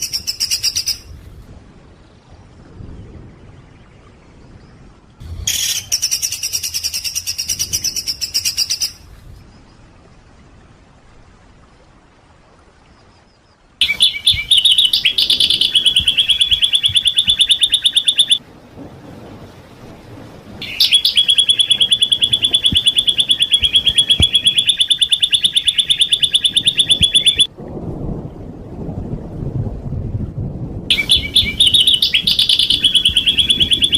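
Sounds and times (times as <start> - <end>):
low rumbling noise: 1.0 - 6.2, 26.2 - 33.9
songbird rapid trills: 13.8 - 18.4, 20.6 - 27.5, 30.9 - 33.9.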